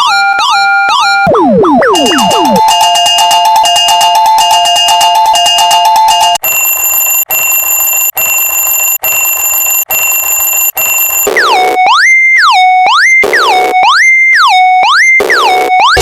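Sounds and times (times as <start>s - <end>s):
pulsing electronic tone: 1.3s - 2.8s
two-tone railroad crossing bells: 2.7s - 8.4s.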